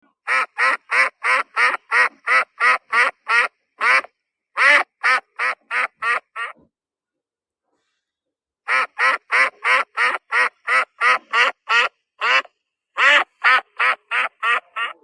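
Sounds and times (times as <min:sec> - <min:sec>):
duck quacking: 0:00.2 - 0:06.6, 0:08.7 - 0:15.0.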